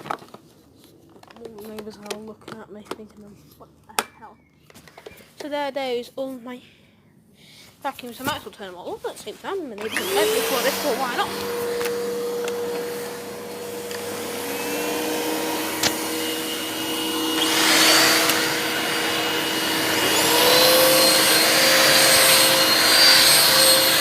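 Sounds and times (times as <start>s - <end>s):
vacuum cleaners running: 9.2s - 24.0s.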